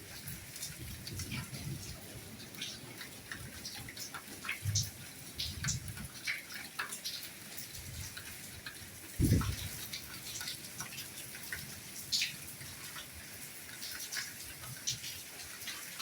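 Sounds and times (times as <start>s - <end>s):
soft rain falling: 0.0s - 16.0s
heavy raindrop thuds: 9.2s - 9.8s.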